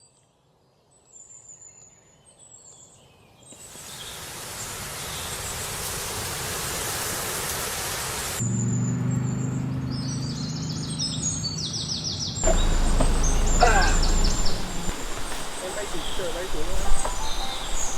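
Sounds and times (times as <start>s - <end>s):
faint high bird chirps: 12.4s - 17.9s.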